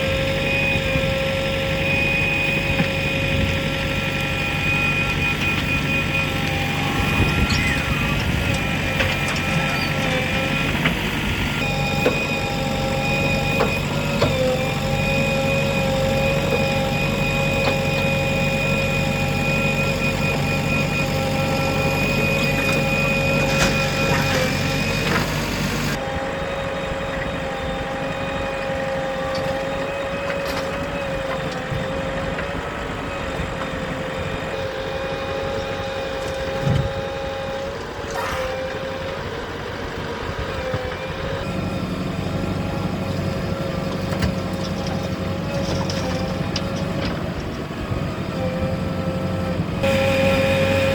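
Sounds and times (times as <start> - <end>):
heavy machinery diesel engine: 0.0 - 50.9.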